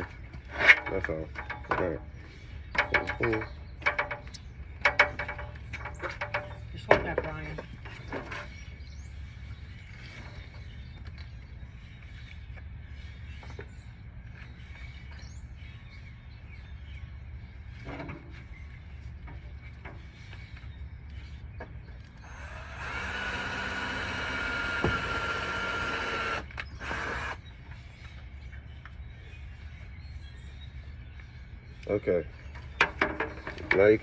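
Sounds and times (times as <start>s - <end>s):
power drill whining: 22.2s - 27.4s.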